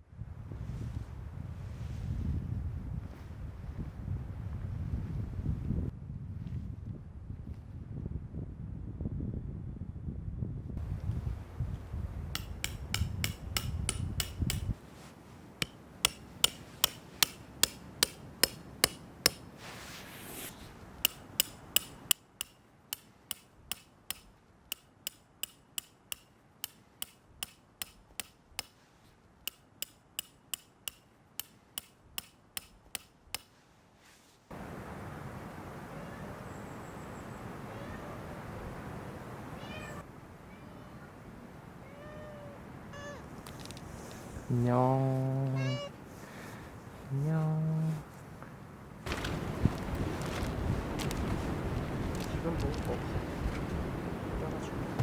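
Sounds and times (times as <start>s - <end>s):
wind buffeting microphone: 0.1s - 14.8s, 49.0s - 55.0s
hammer striking metal tent pegs: 12.4s - 14.9s, 15.6s - 19.6s, 21.0s - 28.8s, 29.5s - 33.6s.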